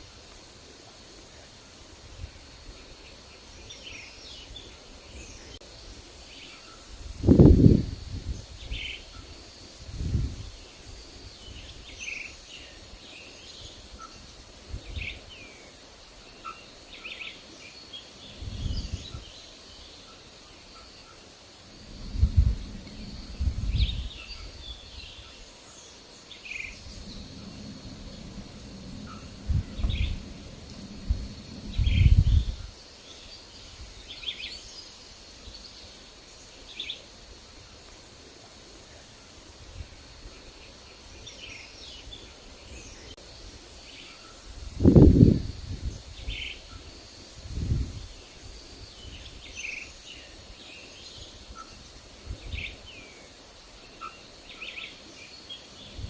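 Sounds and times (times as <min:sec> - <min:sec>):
faint insect-like hum: 0:00.0 - 0:56.0
forest birds chirping: 0:00.0 - 0:56.0
wind buffeting microphone: 0:07.0 - 0:08.9, 0:09.8 - 0:10.7, 0:18.3 - 0:19.3, 0:21.8 - 0:25.2, 0:26.7 - 0:32.8, 0:44.5 - 0:46.4, 0:47.3 - 0:48.2, 0:52.2 - 0:52.8.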